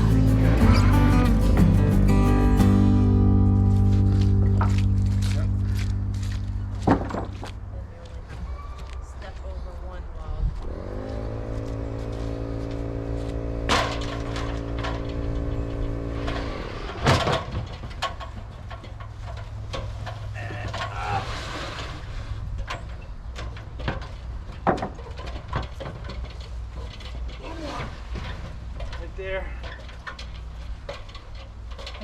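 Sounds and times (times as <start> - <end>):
sharp knocks and clunks: 6.8 - 7.6, 13.4 - 21.0, 22.6 - 32.0
engine idling: 11.3 - 17.1.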